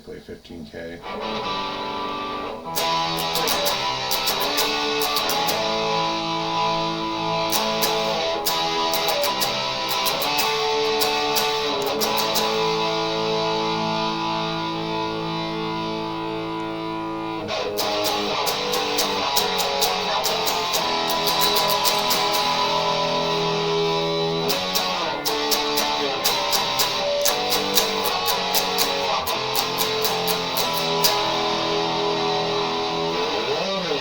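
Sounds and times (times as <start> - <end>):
electric guitar playing: 1.0 - 34.0.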